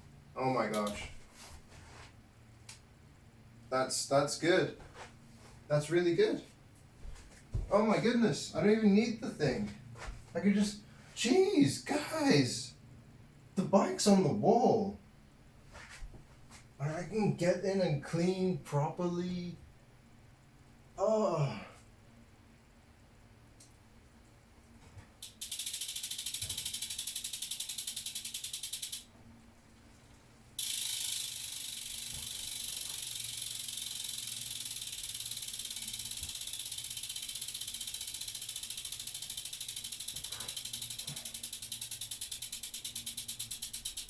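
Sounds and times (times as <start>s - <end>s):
bicycle freehub ticking: 25.2s - 29.1s, 30.6s - 44.0s.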